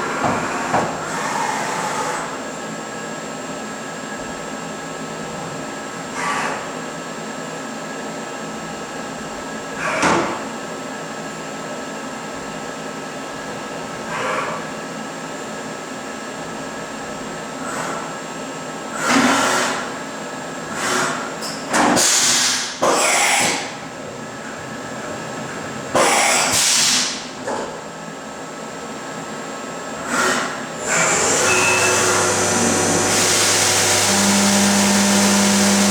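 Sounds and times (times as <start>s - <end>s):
machine hum and high whine: 27.2s - 35.9s.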